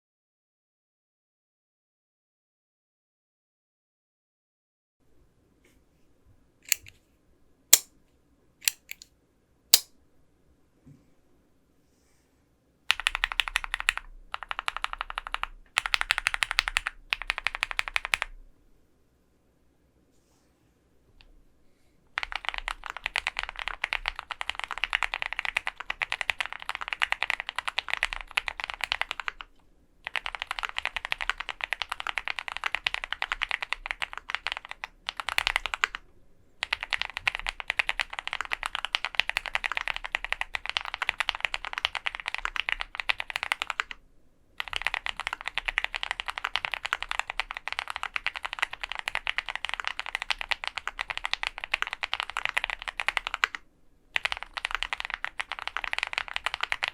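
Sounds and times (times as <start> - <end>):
mechanical keyboard typing: 8.6 - 9.0, 12.9 - 18.3, 22.2 - 36.0, 36.6 - 44.0, 44.6 - 53.6, 54.2 - 56.9.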